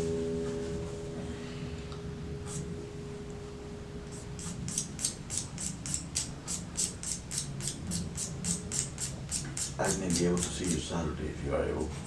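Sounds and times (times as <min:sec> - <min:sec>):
guitar note ringing: 0:00.0 - 0:04.4
quick regular scratching: 0:04.4 - 0:10.9.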